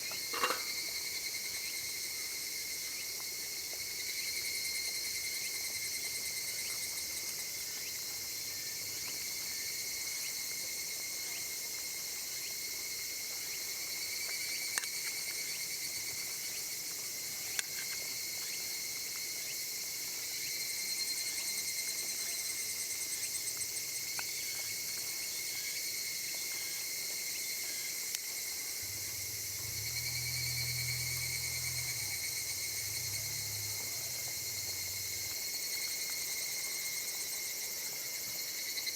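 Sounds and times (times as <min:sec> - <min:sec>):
insects buzzing: 0:00.0 - 0:38.9
low hum: 0:28.7 - 0:35.6.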